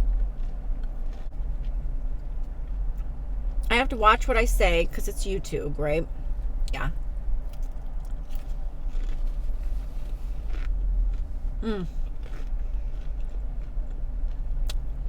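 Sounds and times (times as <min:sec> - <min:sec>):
chewing and biting: 0:00.0 - 0:03.7, 0:07.4 - 0:15.0
low rumble: 0:00.0 - 0:15.0.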